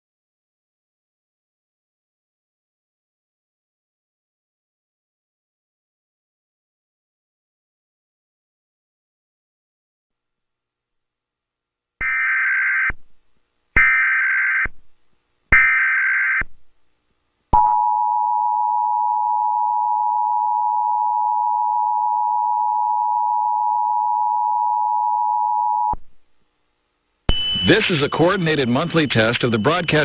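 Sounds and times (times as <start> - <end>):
two-tone attention signal: 17.6 - 26.0, 27.3 - 30.0
digital data bursts: 27.3 - 30.0.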